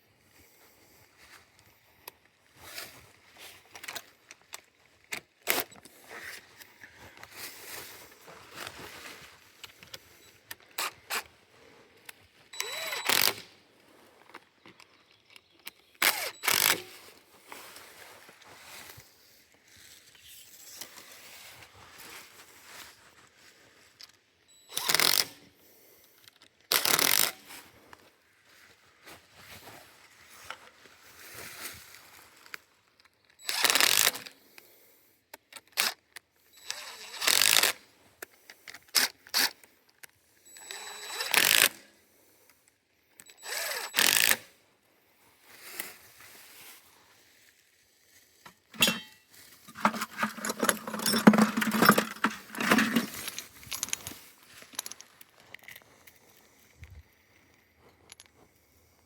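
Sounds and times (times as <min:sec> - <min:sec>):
hand work scraping and clinking: 0:48.4 - 0:56.9.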